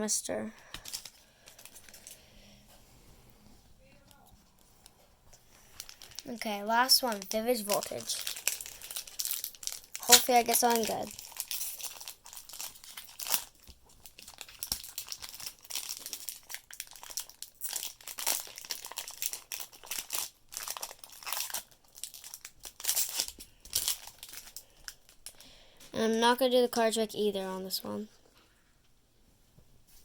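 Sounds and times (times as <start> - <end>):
foil wrapper crinkling: 0.7 - 2.2, 4.1 - 25.4.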